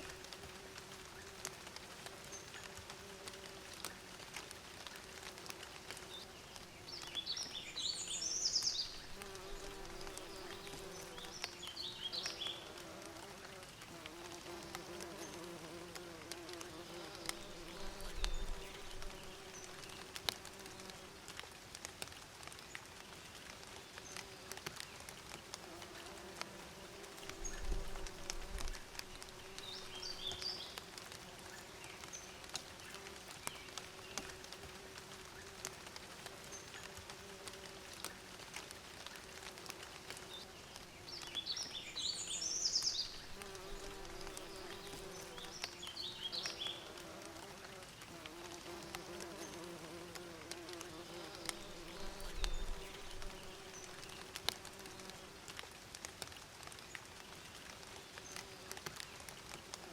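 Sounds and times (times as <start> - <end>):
bees buzzing: 43.1 - 55.2.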